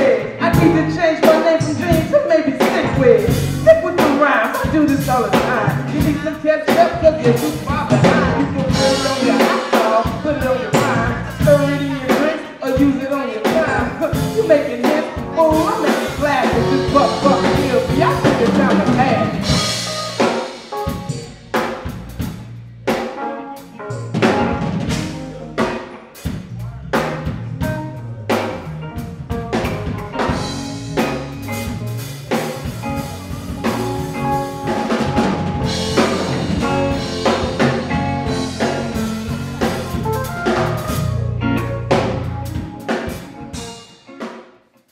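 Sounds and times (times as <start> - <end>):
hip hop instrumental beat: 0.4 - 21.8, 29.0 - 44.2.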